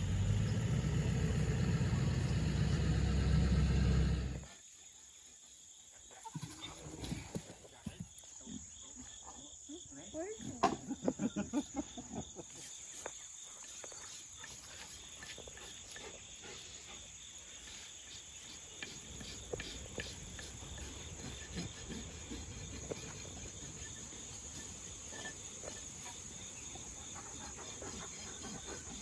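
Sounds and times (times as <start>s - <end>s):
low rumble: 0.0s - 4.4s
insect chorus: 0.0s - 29.0s.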